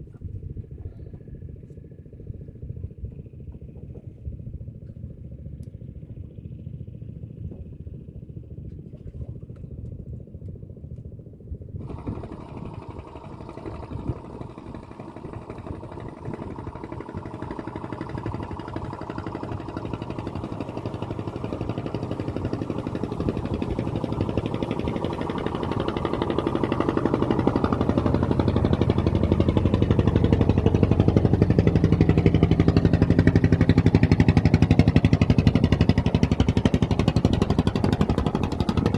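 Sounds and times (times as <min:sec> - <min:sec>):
small engine running: 0:11.8 - 0:38.9.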